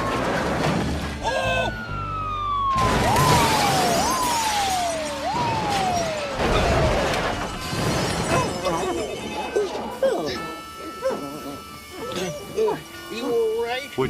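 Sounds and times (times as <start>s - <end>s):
police siren: 0.0s - 14.0s
crash noise: 2.8s - 8.7s.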